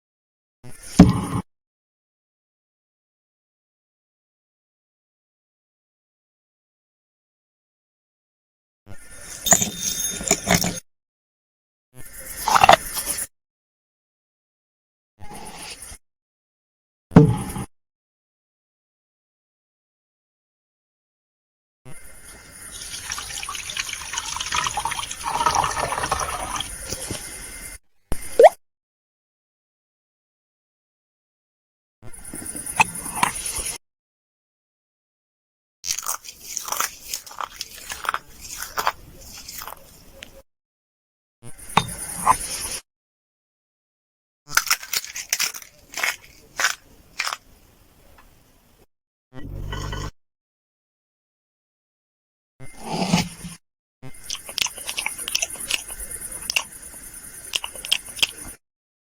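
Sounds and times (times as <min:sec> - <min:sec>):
crunchy biting and chewing: 0:12.4 - 0:13.2, 0:23.0 - 0:27.4, 0:35.9 - 0:40.4, 0:44.5 - 0:47.5, 0:54.2 - 0:58.6.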